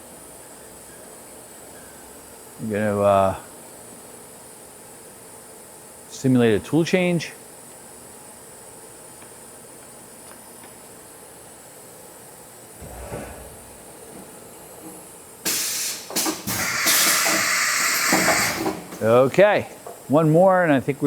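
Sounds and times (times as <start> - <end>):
machine hum: 12.8 - 15.3
compressed air hiss: 15.4 - 19.0.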